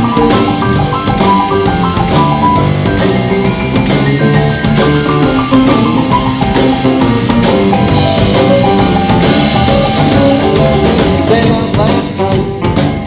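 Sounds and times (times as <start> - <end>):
drum kit steady beat: 0.0 - 13.0
melody instruments: 0.0 - 13.0.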